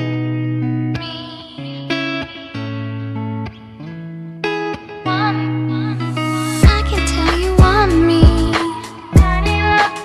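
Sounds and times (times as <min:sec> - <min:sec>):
pop r and b music: 0:06.0 - 0:10.0.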